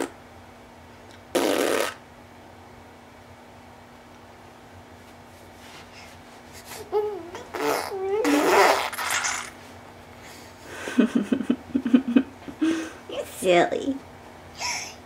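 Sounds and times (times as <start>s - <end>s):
baby vocalizing: 6.6s - 9.6s.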